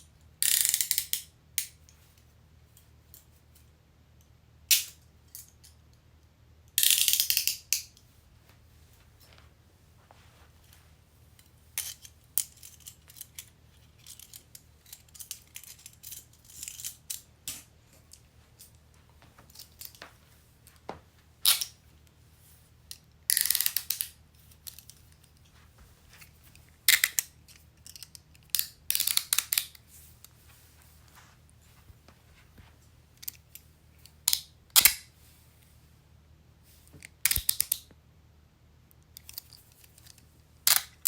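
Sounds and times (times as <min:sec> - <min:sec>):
handcuff ratcheting clicks: 0:00.4 - 0:01.7, 0:23.3 - 0:24.1, 0:27.8 - 0:29.8.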